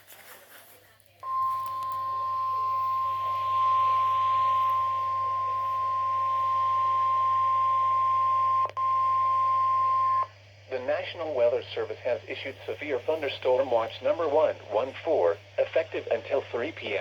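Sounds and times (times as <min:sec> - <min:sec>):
steady alarm beep: 0:01.2 - 0:10.4.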